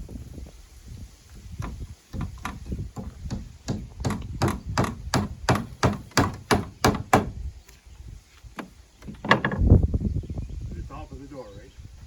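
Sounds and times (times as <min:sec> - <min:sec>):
hammer striking wood: 0:01.6 - 0:07.4.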